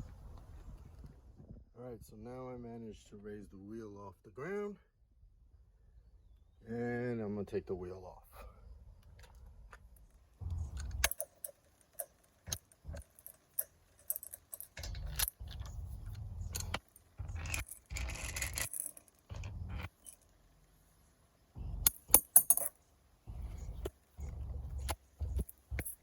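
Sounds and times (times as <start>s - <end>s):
metal clinking and clattering: 10.5s - 20.3s, 21.8s - 22.8s, 23.5s - 26.0s.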